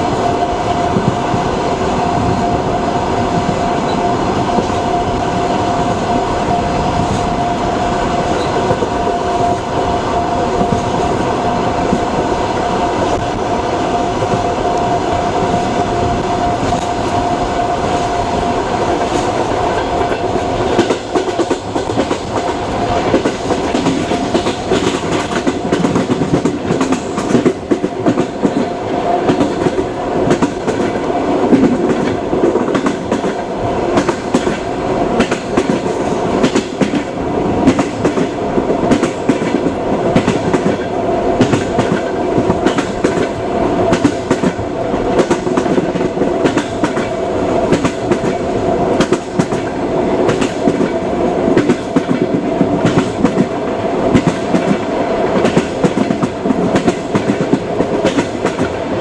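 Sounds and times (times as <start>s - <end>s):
train rumbling: 0.0s - 59.0s
wheels clacking over rail joints: 18.1s - 59.0s.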